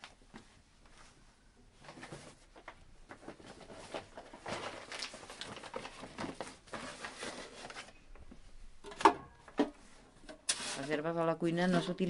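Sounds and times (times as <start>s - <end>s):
rustling: 0.1s - 8.6s.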